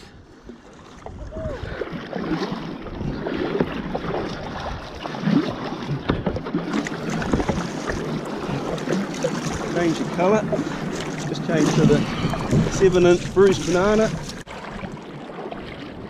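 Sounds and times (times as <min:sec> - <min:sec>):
water splashing against kayak hull: 0:00.0 - 0:16.0
wind on microphone: 0:01.0 - 0:05.0, 0:10.4 - 0:14.4.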